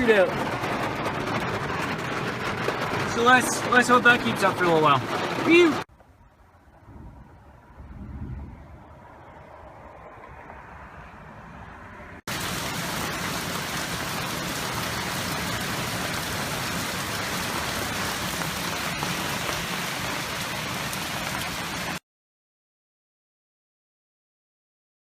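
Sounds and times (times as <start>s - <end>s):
heavy rain pouring: 0.0s - 5.9s, 12.3s - 22.0s.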